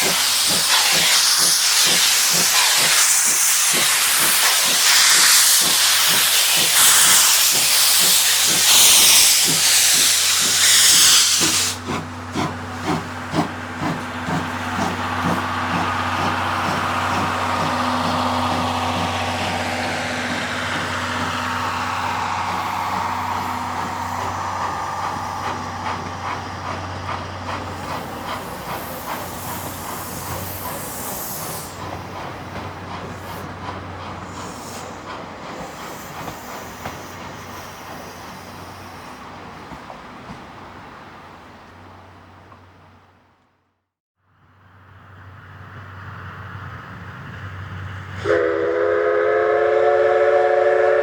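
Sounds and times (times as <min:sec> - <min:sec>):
steam locomotive hissing: 0:00.0 - 0:43.0, 0:44.8 - 0:51.0.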